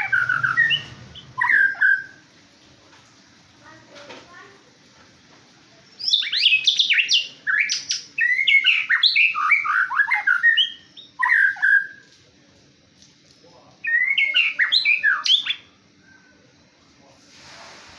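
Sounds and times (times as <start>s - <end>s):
bird singing whistles and chirps: 0.0s - 2.2s, 6.0s - 12.0s, 13.8s - 15.7s.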